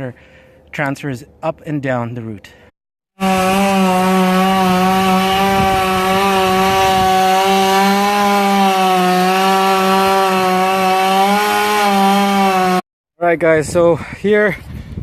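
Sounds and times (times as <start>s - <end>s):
chainsaw cutting wood: 3.2s - 12.8s.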